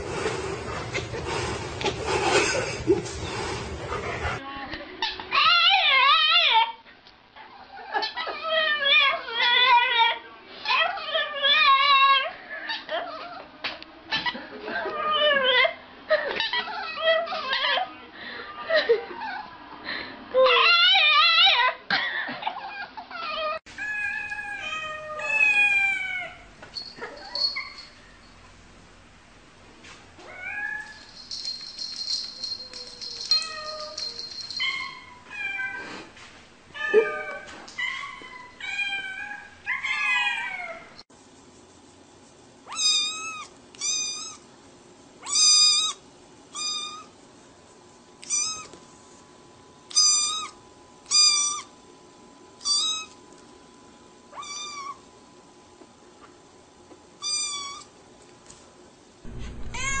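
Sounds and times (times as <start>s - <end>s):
cat meowing: 59.5s - 60.0s.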